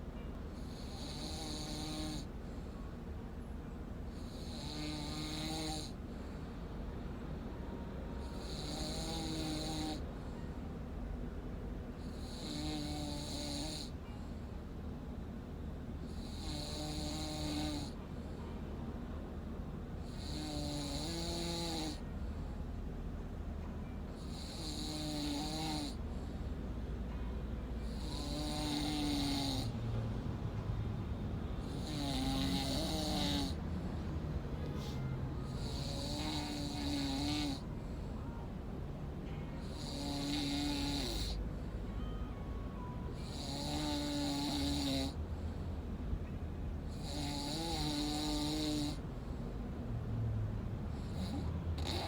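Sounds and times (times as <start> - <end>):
man snoring: 0.6 - 2.4, 4.1 - 6.0, 8.2 - 10.1, 12.0 - 14.0, 16.0 - 18.0, 20.0 - 22.1, 24.2 - 26.1, 27.8 - 29.8, 31.6 - 33.8, 35.4 - 37.7, 39.6 - 41.5, 43.1 - 45.2, 46.9 - 49.0, 51.0 - 52.0.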